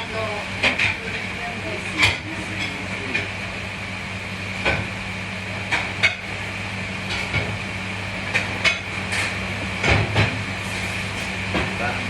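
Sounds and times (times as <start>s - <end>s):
kitchen machinery hum: 0.0s - 12.0s.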